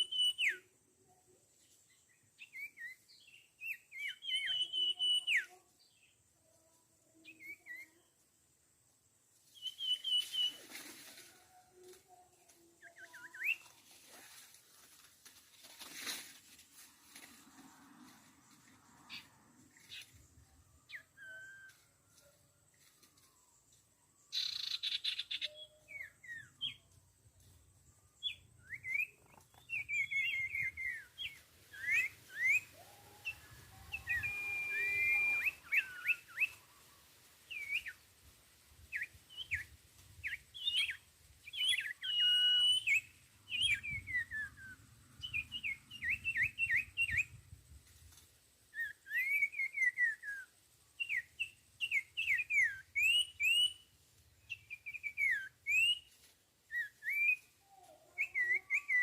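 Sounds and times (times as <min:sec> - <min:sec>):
birds calling with sliding whistles: 0:00.0 - 0:00.6, 0:02.5 - 0:05.5, 0:09.5 - 0:11.1, 0:12.8 - 0:13.9, 0:24.3 - 0:26.8, 0:28.2 - 0:36.7, 0:37.5 - 0:38.0, 0:38.9 - 0:47.4, 0:48.7 - 0:53.8, 0:54.4 - 0:56.1, 0:56.7 - 0:59.0.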